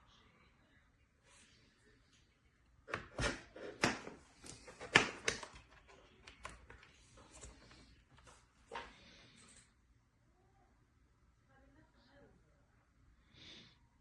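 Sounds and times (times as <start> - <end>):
cables plugging in clicks: 2.9 - 6.9.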